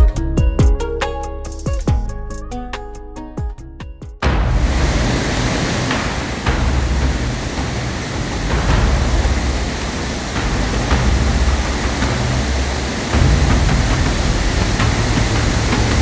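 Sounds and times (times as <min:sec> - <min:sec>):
waterfall roaring: 0:04.3 - 0:16.0.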